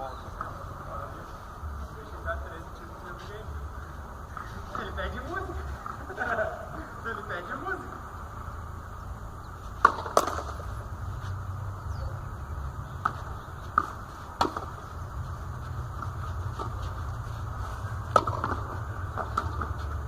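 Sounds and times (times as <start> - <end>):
tennis ball pops: 9.8 - 10.7, 13.0 - 14.8, 18.1 - 19.8.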